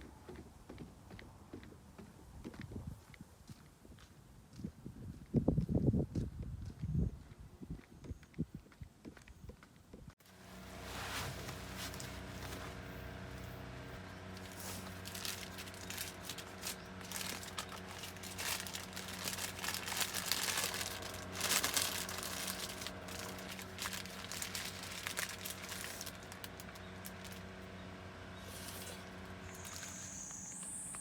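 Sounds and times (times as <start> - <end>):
steady low hum: 10.2 - 31.0
wrapping crinkling and rustling: 10.4 - 12.8, 14.2 - 27.7, 28.4 - 30.3.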